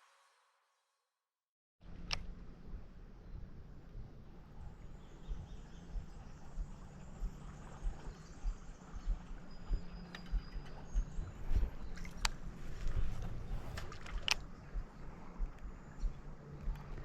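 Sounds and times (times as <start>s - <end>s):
birds: 3.1s - 17.0s
soft low thumps: 3.9s - 17.0s.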